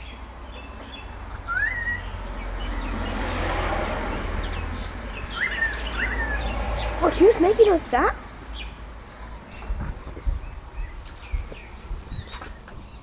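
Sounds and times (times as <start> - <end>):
wind buffeting microphone: 0.9 - 13.0
short up-slurred bird calls: 4.5 - 7.1.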